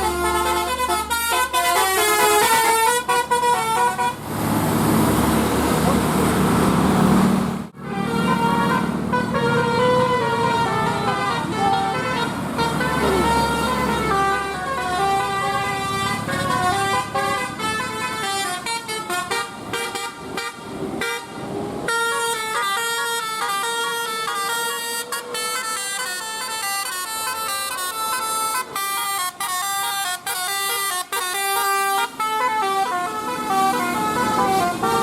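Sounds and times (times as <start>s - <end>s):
bus air horn playing a tune: 0.0s - 4.2s, 7.8s - 35.0s.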